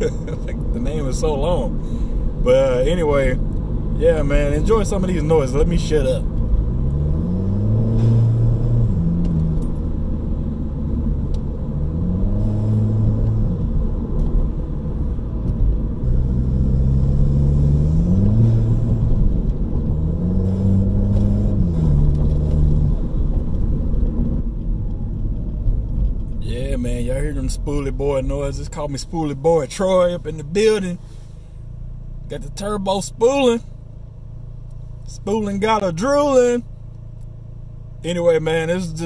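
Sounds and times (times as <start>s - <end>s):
car engine accelerating: 0.0s - 39.0s
road rumble: 0.0s - 39.0s.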